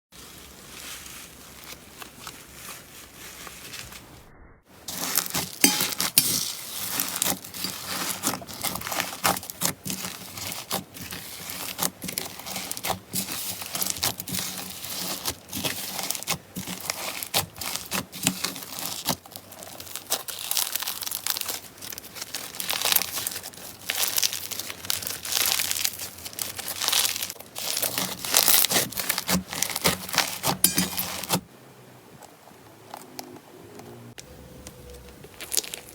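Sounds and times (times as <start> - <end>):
slime crackling and squelching: 0.1 - 31.5, 34.8 - 35.9.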